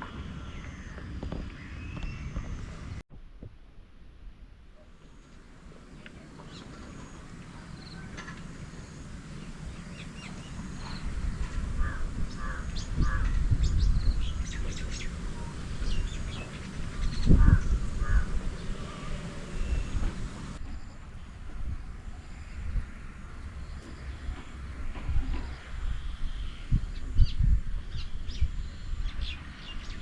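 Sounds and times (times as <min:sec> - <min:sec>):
crow-like caws: 0:11.8 - 0:13.4, 0:17.4 - 0:19.2.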